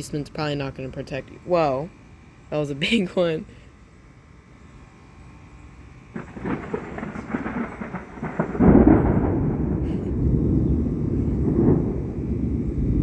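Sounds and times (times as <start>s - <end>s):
thunder crackling and rumbling: 6.1s - 13.0s.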